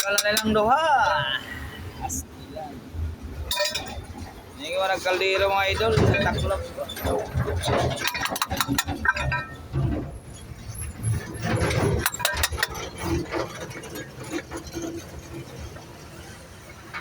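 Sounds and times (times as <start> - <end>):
metal tools clinking: 3.5 - 4.0, 5.8 - 10.0, 11.1 - 15.1.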